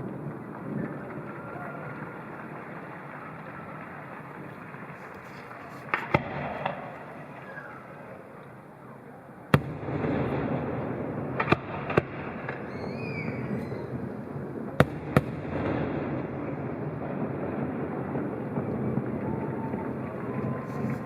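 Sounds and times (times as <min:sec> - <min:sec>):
fireworks bangs: 0:00.0 - 0:21.0.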